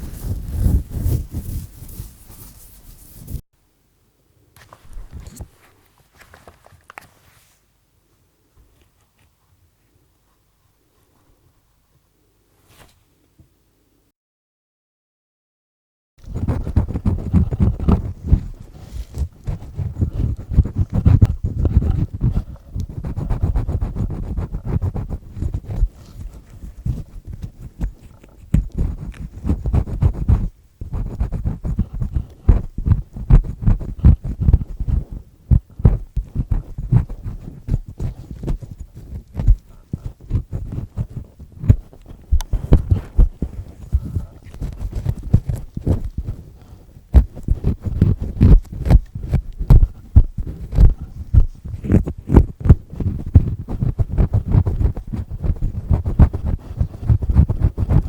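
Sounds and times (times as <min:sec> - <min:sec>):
earpick scratching inside ear: 0:00.0 - 0:03.4, 0:16.2 - 0:58.0.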